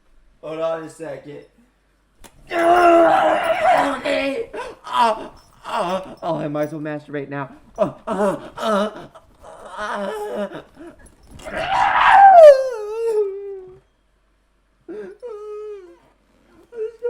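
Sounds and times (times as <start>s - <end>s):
man howling: 2.5s - 6.3s, 11.4s - 13.8s.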